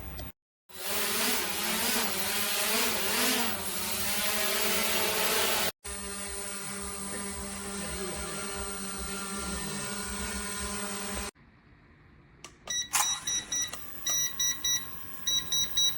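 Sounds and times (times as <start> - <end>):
drone propellers whining: 0.8 - 11.3
short electronic beeps: 12.7 - 15.9.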